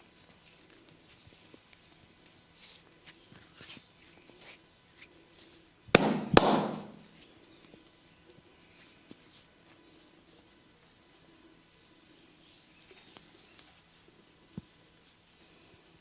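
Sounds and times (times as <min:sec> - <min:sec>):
scratching and rubbing on hair: 0:00.2 - 0:05.7, 0:07.1 - 0:16.0
sharp loud impacts: 0:05.9 - 0:07.0.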